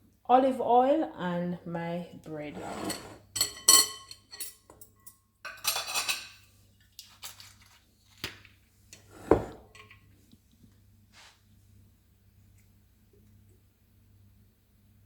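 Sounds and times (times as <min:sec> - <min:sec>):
dishes and utensils clinking: 0:02.6 - 0:06.5, 0:09.1 - 0:10.1.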